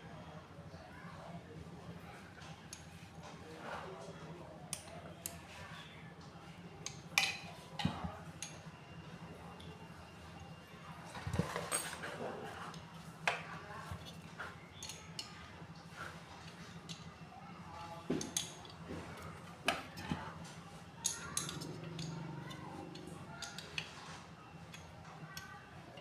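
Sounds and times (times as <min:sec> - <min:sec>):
tools clicking and clinking: 0:14.8 - 0:15.4, 0:18.1 - 0:18.9, 0:21.0 - 0:24.0.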